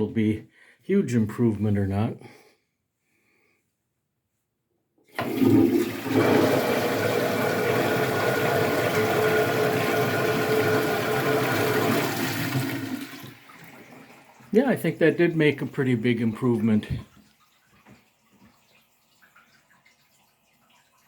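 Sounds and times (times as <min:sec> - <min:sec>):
toilet flushing: 0:05.1 - 0:21.0
toilet tank refilling: 0:05.1 - 0:21.0.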